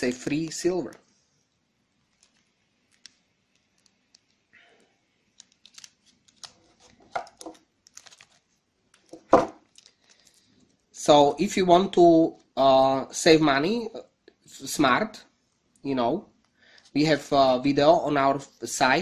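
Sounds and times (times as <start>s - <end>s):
packaging rustling: 2.0s - 4.5s, 5.3s - 10.6s.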